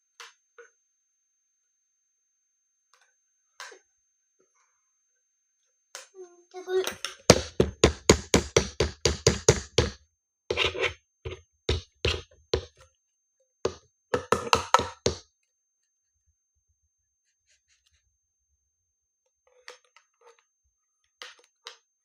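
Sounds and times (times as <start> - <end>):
sharp knocks on hard object: 7.3 - 10.8, 11.7 - 12.8, 13.7 - 15.2.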